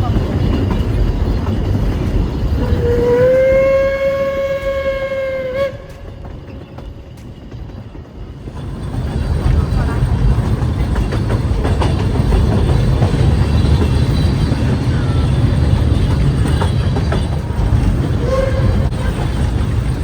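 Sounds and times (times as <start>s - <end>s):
train carriages rumbling: 0.0s - 20.0s
wheels clicking on rails: 0.0s - 20.0s.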